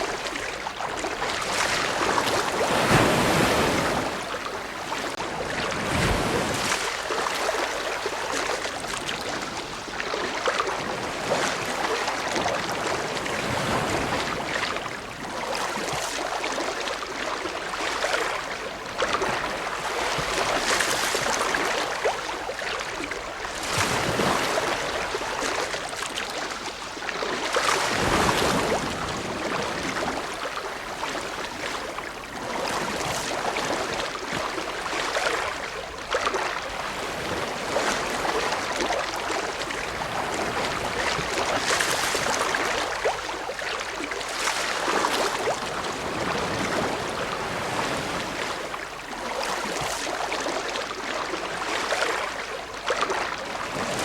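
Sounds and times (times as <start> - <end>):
ocean waves breaking: 0.0 - 9.9, 23.5 - 26.2.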